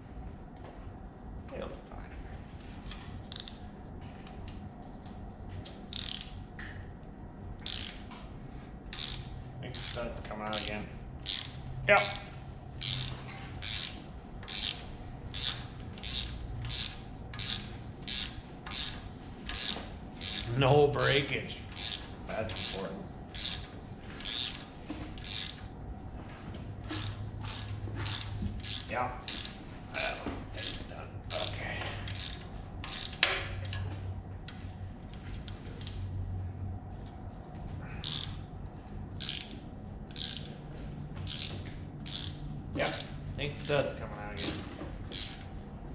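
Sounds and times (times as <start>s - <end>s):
bolt squeaking in threads: 3.3s - 3.6s, 5.9s - 6.4s, 7.6s - 8.1s, 8.9s - 20.5s, 21.8s - 25.6s, 26.9s - 29.6s, 30.6s - 33.7s, 38.0s - 38.4s, 39.2s - 40.5s, 41.2s - 43.8s, 44.4s - 45.5s
hand ratchet rasping: 5.9s - 6.4s, 7.6s - 8.1s, 8.9s - 25.7s, 26.9s - 33.4s, 38.0s - 38.4s, 39.2s - 40.6s, 41.2s - 45.5s
wrench strokes on bolt: 5.9s - 6.4s, 7.6s - 8.0s, 8.9s - 21.2s, 21.8s - 25.6s, 26.9s - 29.6s, 30.6s - 33.3s, 38.0s - 38.4s, 39.2s - 39.5s, 40.1s - 40.5s, 41.2s - 43.8s, 44.4s - 45.5s.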